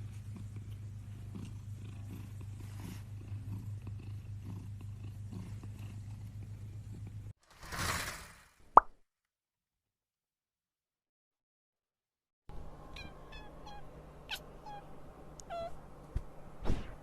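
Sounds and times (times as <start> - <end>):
cat purring: 0.0 - 7.9.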